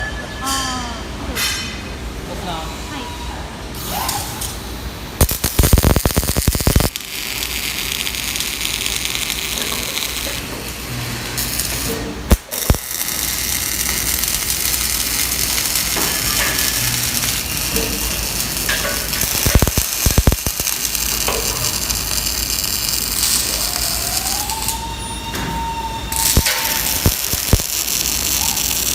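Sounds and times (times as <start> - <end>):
welding arc hissing and crackling: 4.2 - 24.9, 26.1 - 28.9
sharp welding cracks: 5.2 - 24.8, 26.1 - 28.9.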